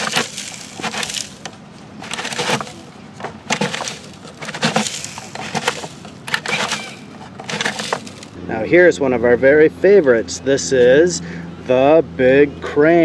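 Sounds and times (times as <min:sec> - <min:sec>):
toy mixer drum scraping rattle: 0:00.0 - 0:08.4.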